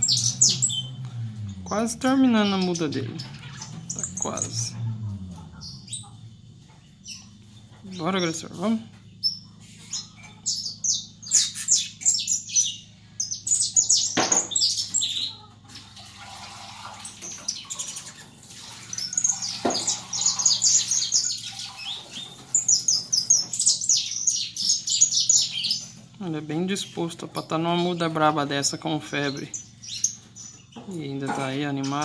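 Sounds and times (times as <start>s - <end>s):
faint low hum: 0.0s - 14.1s
finch chirping: 0.0s - 15.6s, 16.4s - 32.0s
sharp knocks: 14.2s - 14.6s.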